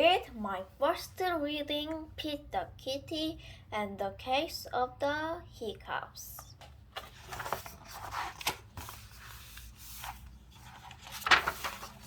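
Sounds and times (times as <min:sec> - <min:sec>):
book pages rustling and turning: 0:06.6 - 0:12.0.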